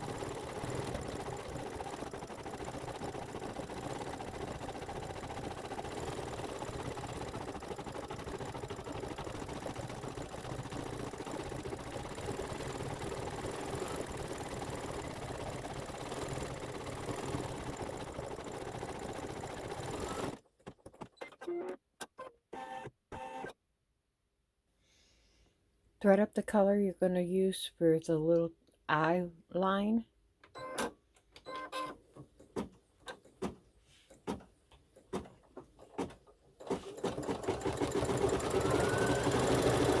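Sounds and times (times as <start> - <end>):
embroidery machine stitching: 0.0 - 23.6, 35.0 - 40.0.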